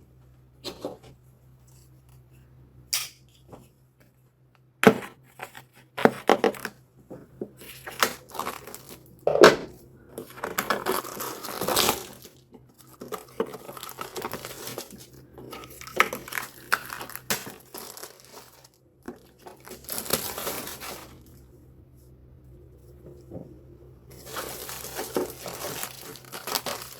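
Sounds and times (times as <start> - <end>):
packaging tearing and crinkling: 7.6 - 9.1, 10.2 - 21.4, 24.1 - 26.9.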